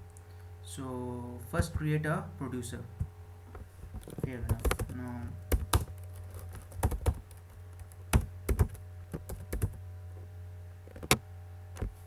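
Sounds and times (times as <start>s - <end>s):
computer keyboard typing: 4.0s - 9.8s.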